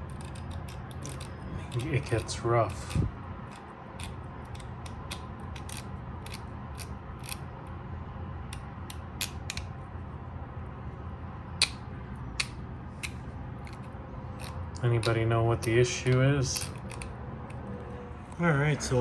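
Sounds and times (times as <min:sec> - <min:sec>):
gears clicking and catching: 0:00.0 - 0:07.5, 0:12.4 - 0:17.6.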